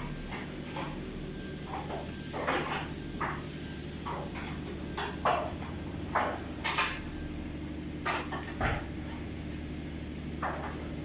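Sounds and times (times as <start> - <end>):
low machine hum: 0.0 - 11.0
knocks and clanks of tools: 8.0 - 8.9.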